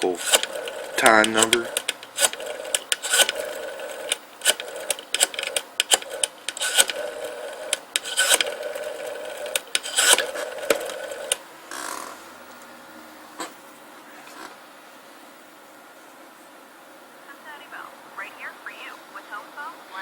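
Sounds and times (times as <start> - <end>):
rotary dial whirring back: 0.0 - 12.4
rotary dial pulse clicks: 0.1 - 12.2.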